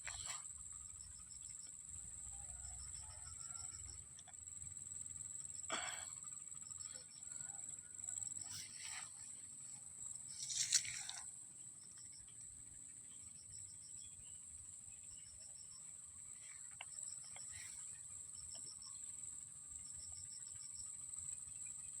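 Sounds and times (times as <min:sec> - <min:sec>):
insect chirping in bursts: 0:00.0 - 0:22.0
insect steady trill: 0:00.0 - 0:22.0
brief rustle: 0:10.4 - 0:11.3.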